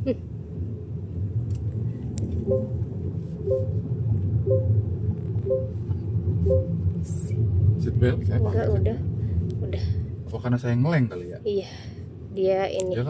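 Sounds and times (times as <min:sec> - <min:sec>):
road and tyre rumble: 0:00.0 - 0:13.0
two-note seatbelt chime: 0:02.5 - 0:02.8, 0:03.5 - 0:03.8, 0:04.5 - 0:04.7, 0:05.5 - 0:05.8, 0:06.5 - 0:06.7.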